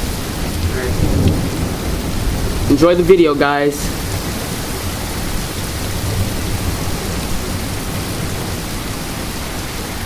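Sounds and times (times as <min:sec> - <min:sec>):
heavy rain pouring: 0:00.0 - 0:10.0.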